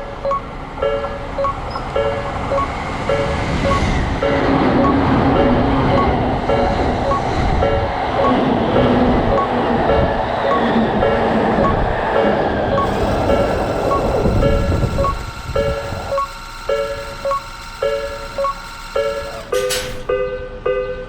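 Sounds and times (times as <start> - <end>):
train rumble: 0.0 - 20.8
railroad crossing bell ringing: 0.0 - 21.0.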